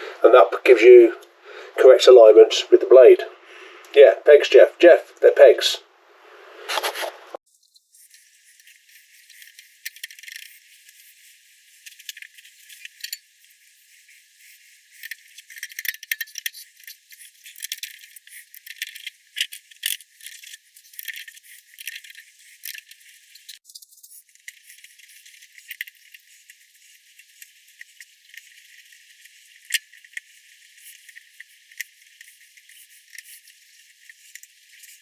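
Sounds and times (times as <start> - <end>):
small metal clicks and rattles: 7.6 - 35.0.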